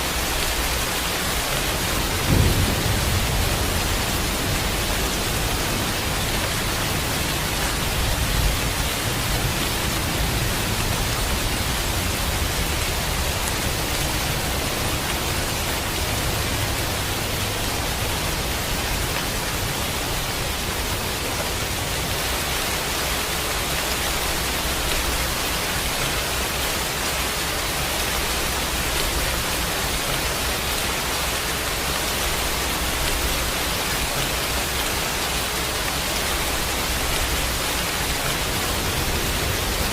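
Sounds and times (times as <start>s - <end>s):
heavy rain: 0.0s - 39.9s
thunder rumble: 1.4s - 19.0s.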